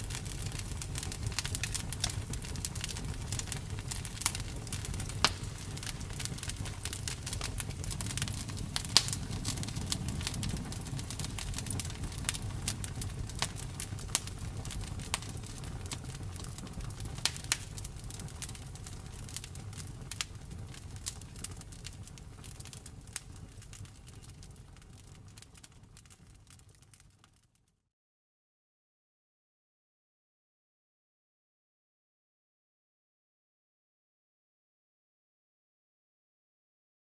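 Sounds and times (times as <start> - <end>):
campfire crackling and popping: 0.0 - 27.6.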